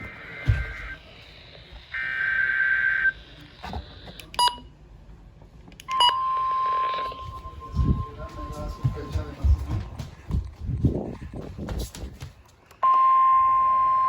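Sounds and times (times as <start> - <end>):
steady alarm tone: 0.0 - 3.3, 5.9 - 10.0.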